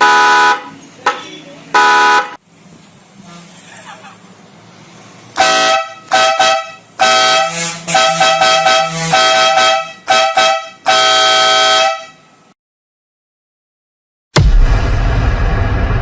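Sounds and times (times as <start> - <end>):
motorcycle twin-tone horn honking: 5.4 - 12.2.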